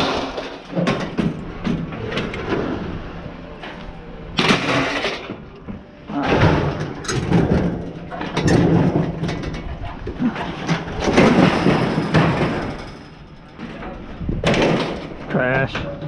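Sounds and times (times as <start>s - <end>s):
scrap metal scraping and knocking: 6.2s - 16.0s.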